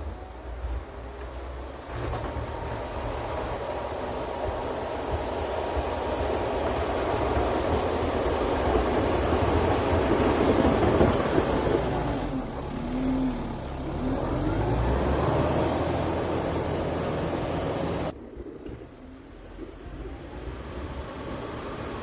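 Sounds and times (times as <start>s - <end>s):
tractor diesel engine running: 0.9s - 18.2s.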